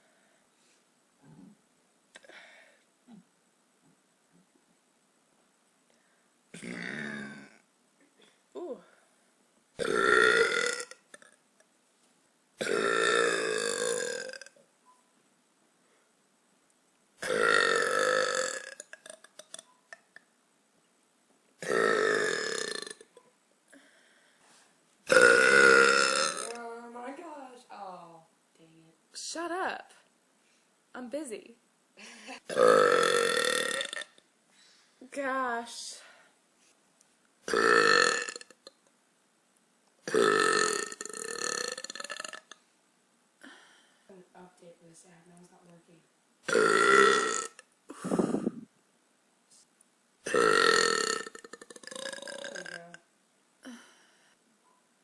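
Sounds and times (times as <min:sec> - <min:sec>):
woman burping: 0:06.6 - 0:07.6, 0:09.8 - 0:11.4, 0:12.6 - 0:14.6, 0:17.2 - 0:20.2, 0:21.6 - 0:23.2, 0:25.1 - 0:26.6, 0:32.0 - 0:34.2, 0:37.5 - 0:38.8, 0:40.0 - 0:42.6, 0:46.5 - 0:48.7, 0:50.2 - 0:53.0, 0:53.6 - 0:54.0.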